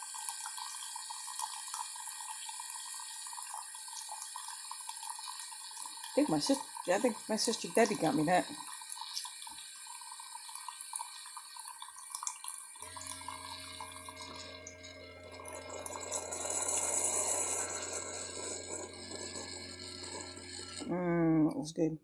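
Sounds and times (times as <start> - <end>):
coffee streaming into a cup: 0.0 - 21.0
coffee maker low hum: 5.8 - 9.3, 12.8 - 21.6.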